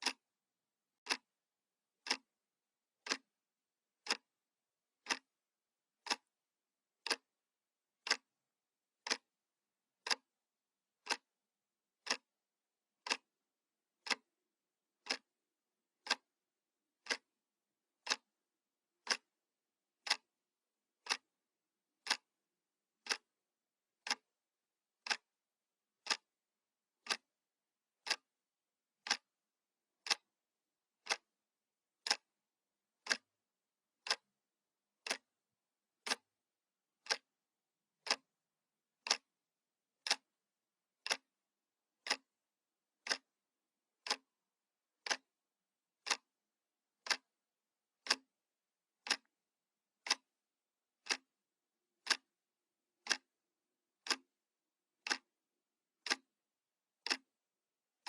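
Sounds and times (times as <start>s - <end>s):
analog clock ticking: 2.0s - 2.2s, 3.0s - 3.2s, 4.0s - 4.2s, 5.0s - 5.2s, 6.0s - 6.3s, 8.0s - 8.2s, 9.0s - 9.2s, 12.0s - 12.2s, 15.0s - 15.2s, 16.0s - 16.2s, 19.0s - 19.3s, 20.0s - 20.2s, 22.0s - 22.3s, 25.0s - 25.2s, 27.0s - 27.2s, 29.0s - 29.2s, 30.0s - 30.2s, 31.0s - 31.2s, 32.0s - 32.3s, 33.0s - 33.3s, 34.0s - 34.2s, 36.0s - 36.2s, 37.0s - 37.2s, 38.0s - 38.2s, 39.0s - 39.3s, 41.0s - 41.3s, 42.0s - 42.3s, 43.0s - 43.3s, 44.0s - 44.2s, 45.0s - 45.2s, 47.0s - 47.2s, 48.0s - 48.2s, 49.0s - 49.3s, 50.0s - 50.2s, 51.0s - 51.3s, 52.0s - 52.3s, 53.0s - 53.2s, 54.0s - 54.2s, 55.0s - 55.3s, 56.0s - 56.2s, 57.0s - 57.3s.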